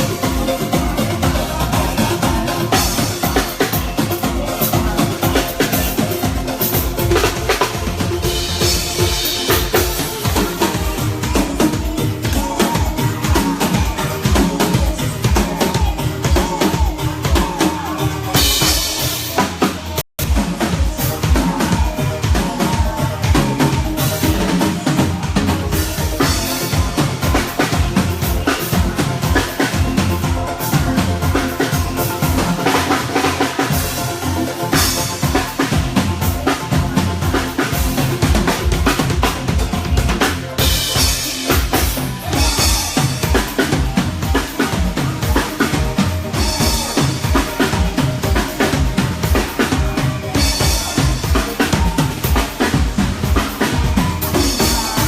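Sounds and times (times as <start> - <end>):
bass drum and snare: 0.0 - 55.0
live band playing: 0.0 - 55.0.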